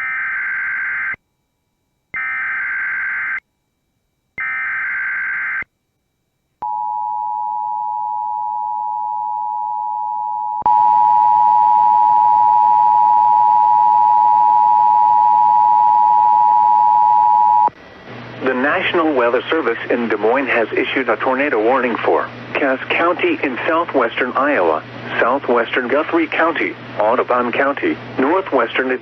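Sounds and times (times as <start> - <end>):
screechy data tone bursts: 2.2 - 3.4
single steady tone: 5.8 - 17.8.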